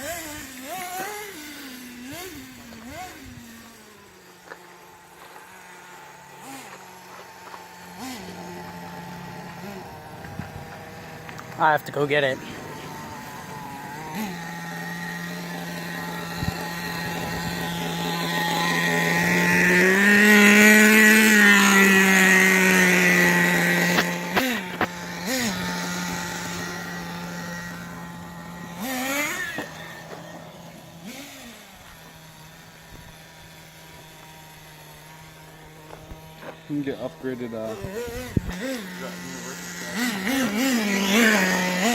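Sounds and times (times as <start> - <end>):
small two-stroke engine idling: 0.0 - 41.9.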